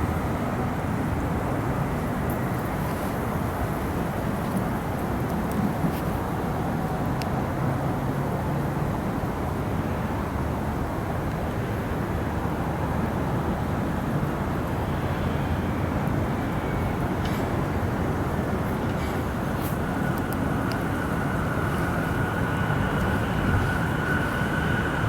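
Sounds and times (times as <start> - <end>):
electric train running past: 11.8 - 25.0.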